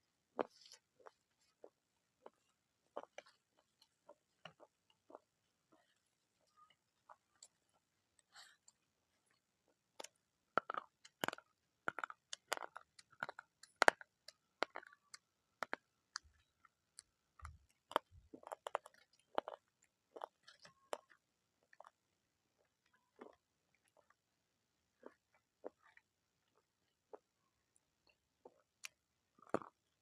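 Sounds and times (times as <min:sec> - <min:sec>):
person chewing crunchy food: 0:00.4 - 0:05.3, 0:10.0 - 0:22.0, 0:22.6 - 0:24.2, 0:24.9 - 0:30.0.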